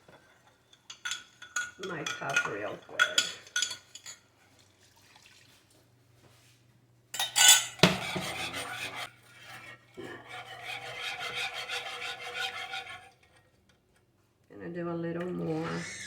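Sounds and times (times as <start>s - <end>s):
scrubbing a cup: 7.4s - 13.4s.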